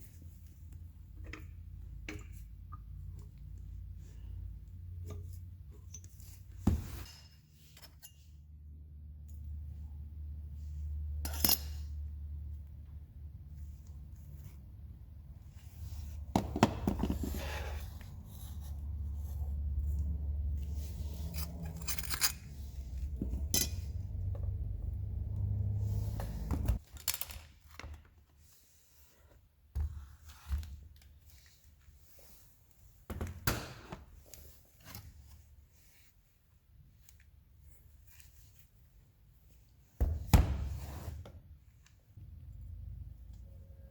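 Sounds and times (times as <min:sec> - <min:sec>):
metal tools clinking and scraping: 0:05.1 - 0:08.4, 0:11.2 - 0:12.0, 0:20.9 - 0:24.1.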